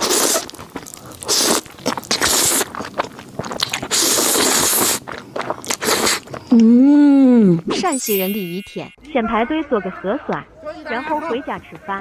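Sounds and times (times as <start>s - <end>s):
crunchy bites and chewing: 0.0s - 6.7s.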